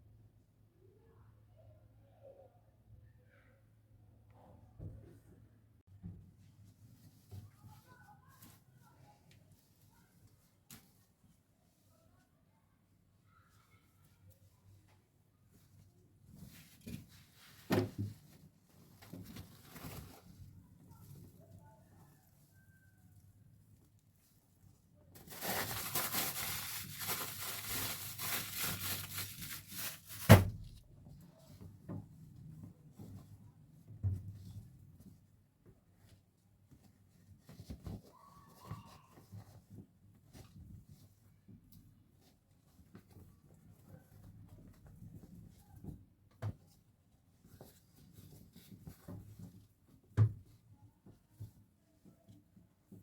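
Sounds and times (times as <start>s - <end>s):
rustling and crinkling: 6.0s - 12.4s, 13.5s - 53.0s.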